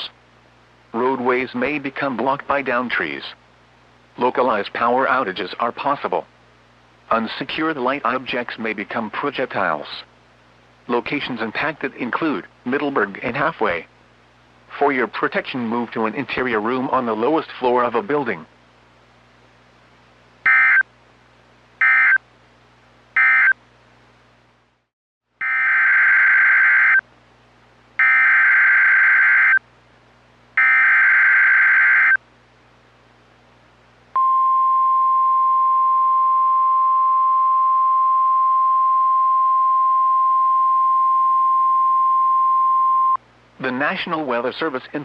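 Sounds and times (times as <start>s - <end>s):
steady warning alarm tone: 20.5s - 20.8s, 21.8s - 22.2s, 23.2s - 23.6s, 25.4s - 27.0s, 28.0s - 29.6s, 30.6s - 32.2s.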